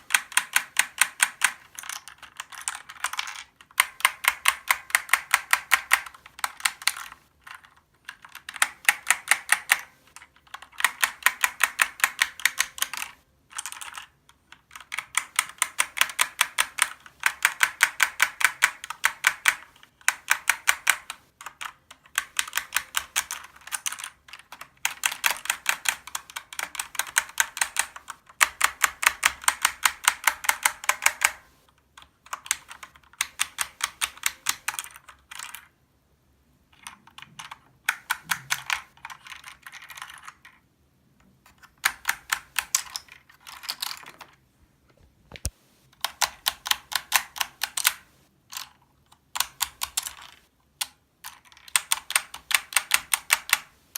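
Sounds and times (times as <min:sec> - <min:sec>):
mechanical keyboard key clicks: 0:36.8 - 0:40.5, 0:41.4 - 0:44.3, 0:45.4 - 0:53.7.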